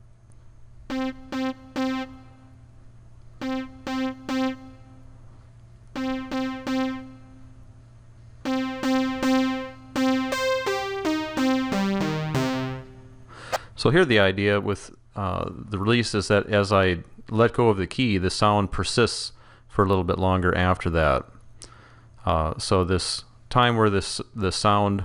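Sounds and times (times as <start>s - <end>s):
synthesizer notes: 0.9s - 2.6s, 3.4s - 5.1s, 6.0s - 7.6s, 8.5s - 13.3s.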